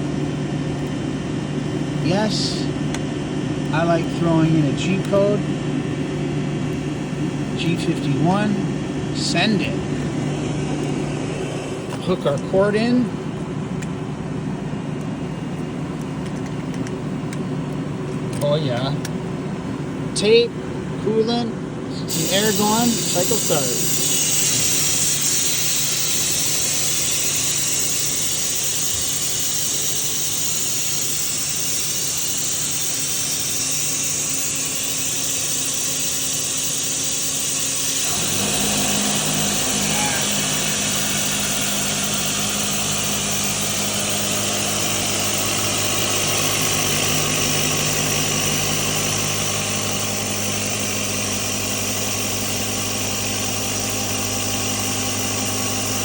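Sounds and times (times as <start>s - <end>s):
deep steady hum: 20.8s - 56.0s
coolant spray and air blast hissing: 22.1s - 56.0s
milling machine running: 22.1s - 56.0s.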